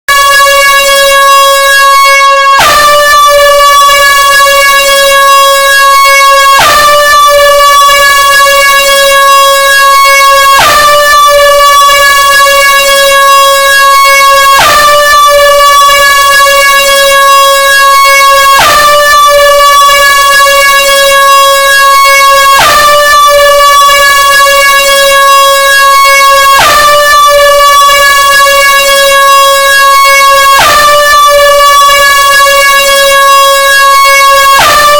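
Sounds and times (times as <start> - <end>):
loud air horn note: 0.1 - 22.0.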